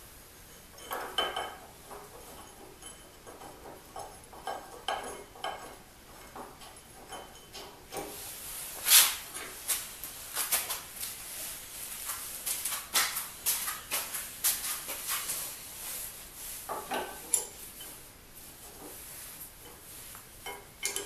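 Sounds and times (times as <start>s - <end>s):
metal parts clinking and rattling: 20.4s - 21.0s.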